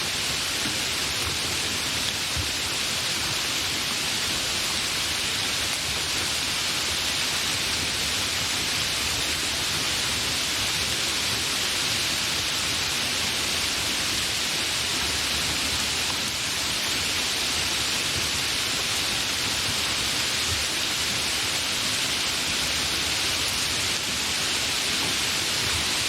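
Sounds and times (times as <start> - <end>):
steady rain: 0.0 - 26.0.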